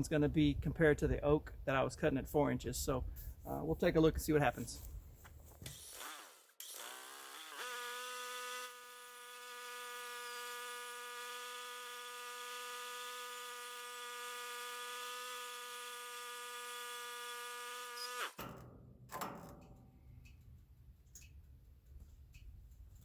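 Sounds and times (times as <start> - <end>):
sawmill engine buzzing: 5.7 - 18.4.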